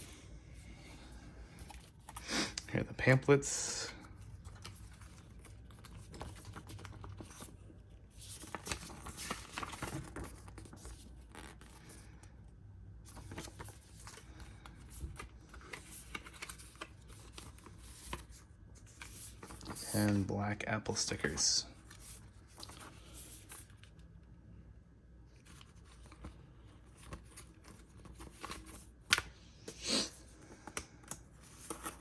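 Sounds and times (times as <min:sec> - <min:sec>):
paper rustling: 0:04.0 - 0:12.0, 0:13.1 - 0:20.2, 0:21.1 - 0:23.9, 0:25.3 - 0:29.3, 0:30.4 - 0:32.0.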